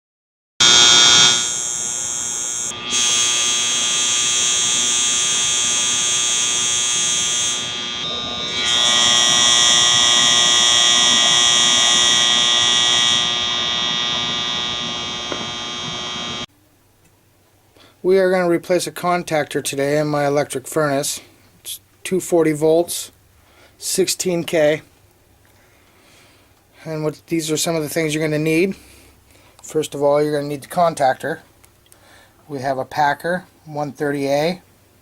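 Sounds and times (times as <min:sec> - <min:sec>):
electrical contactor buzzing: 0:00.6 - 0:16.5.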